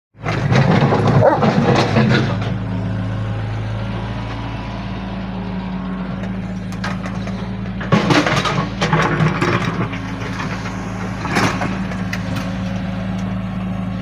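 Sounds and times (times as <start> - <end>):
excavator engine running: 0.2 - 14.0.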